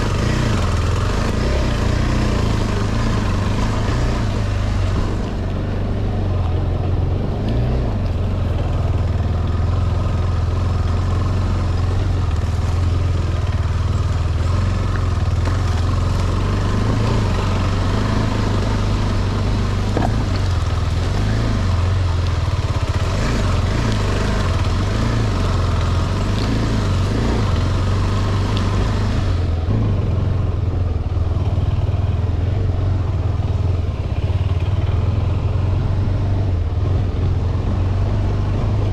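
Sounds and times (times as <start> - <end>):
constant noisy rush: 0.0 - 38.9
motorcycle engine running: 0.0 - 38.9.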